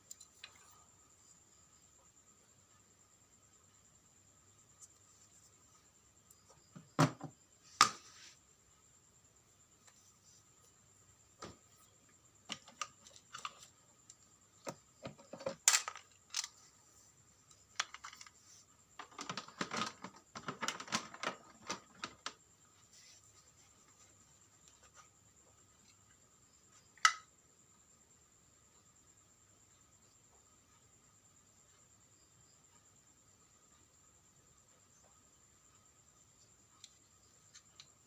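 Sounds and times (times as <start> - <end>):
small hard parts clicking and rattling: 12.5 - 16.7, 17.5 - 22.4.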